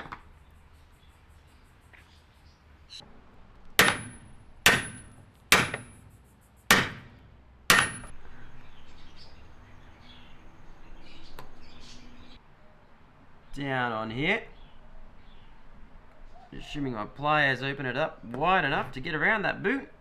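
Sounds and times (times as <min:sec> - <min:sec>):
hammer blows on metal: 0:03.8 - 0:08.6.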